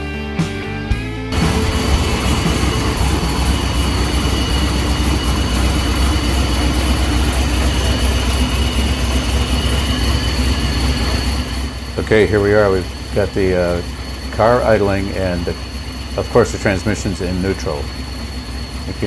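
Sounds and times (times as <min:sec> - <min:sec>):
car engine idling: 0:01.3 - 0:19.0.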